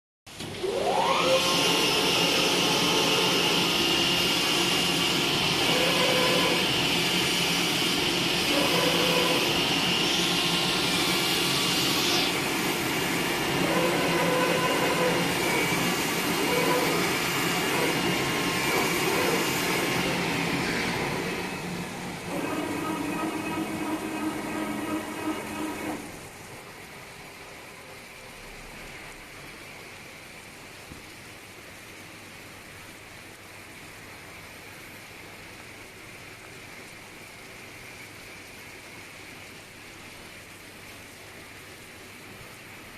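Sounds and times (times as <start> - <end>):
vacuum blower whooshing: 0.4 - 26.2
rising whine: 0.6 - 26.2
high hiss: 1.0 - 30.0.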